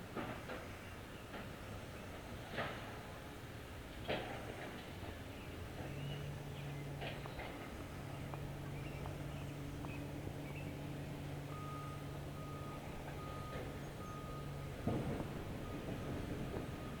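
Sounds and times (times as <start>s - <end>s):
heavy machinery engine running: 1.3s - 17.0s
backup alarm beeping: 11.4s - 17.0s.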